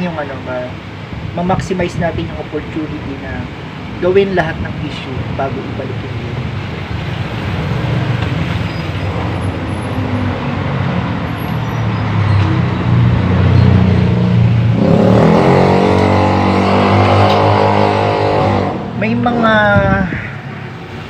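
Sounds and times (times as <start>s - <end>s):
engine droning: 5.0s - 19.9s.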